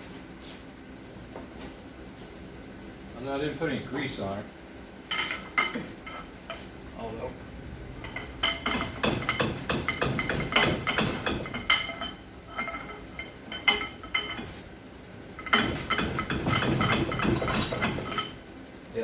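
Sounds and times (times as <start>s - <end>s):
metal clinking of bench vise: 5.1s - 6.6s, 8.0s - 14.6s, 15.4s - 18.4s.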